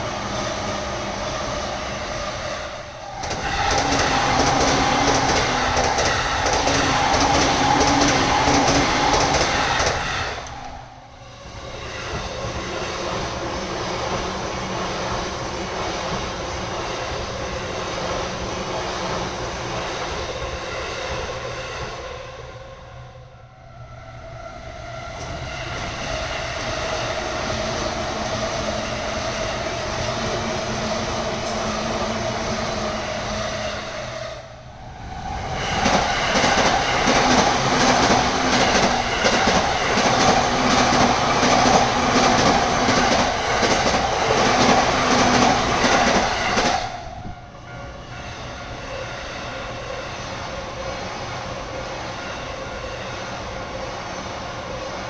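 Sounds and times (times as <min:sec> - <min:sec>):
train wheels clattering over rails: 0:03.2 - 0:10.7, 0:35.7 - 0:47.0.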